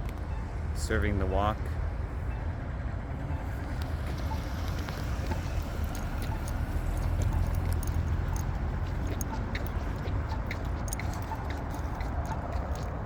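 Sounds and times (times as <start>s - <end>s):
city traffic rumble: 0.0s - 13.0s
crosswalk button ticking: 3.7s - 13.0s.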